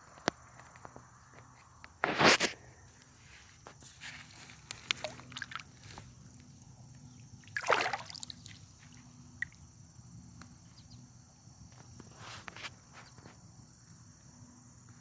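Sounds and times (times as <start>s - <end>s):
small clicks and rustles: 3.6s - 6.5s
water sloshing and splashing: 4.3s - 6.5s, 7.4s - 9.6s.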